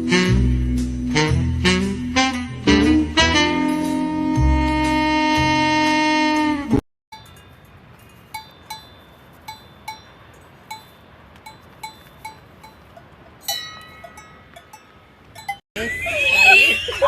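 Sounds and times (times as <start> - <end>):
cowbell clanking: 7.1 - 15.6.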